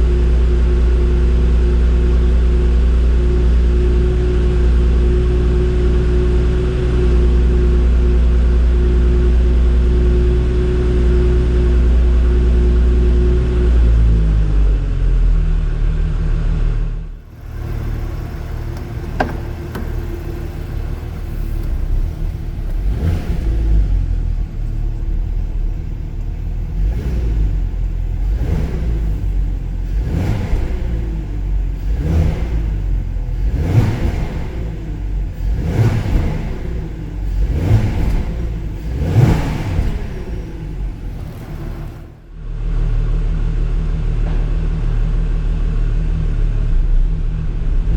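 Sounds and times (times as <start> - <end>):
car engine revving: 17.2 - 42.4.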